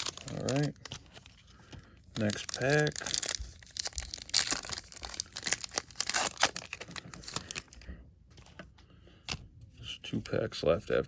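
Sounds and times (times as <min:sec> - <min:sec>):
plastic wrapper tearing and crumpling: 0:00.0 - 0:01.3, 0:02.2 - 0:07.8.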